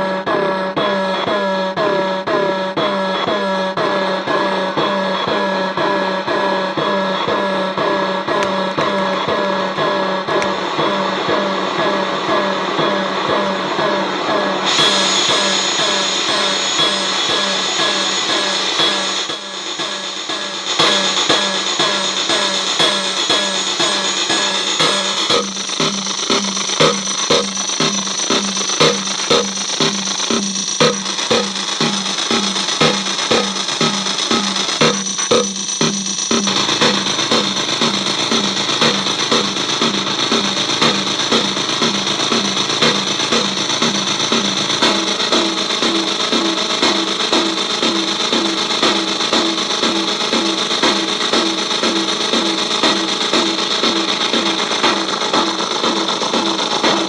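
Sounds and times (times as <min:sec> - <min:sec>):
glitchy drum machine loop: 0:00.0 - 0:57.0
glitchy drum hit repeating: 0:24.8 - 0:45.5
steady buzzing tones: 0:24.8 - 0:45.5.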